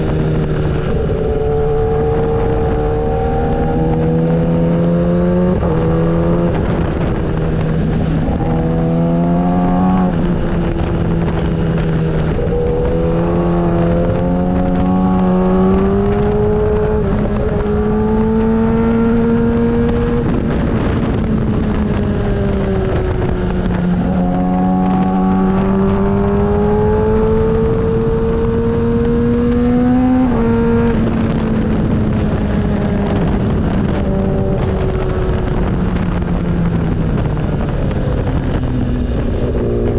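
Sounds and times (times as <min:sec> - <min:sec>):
motorcycle engine revving: 0:00.0 - 0:39.9
wind noise rumble: 0:00.0 - 0:39.9.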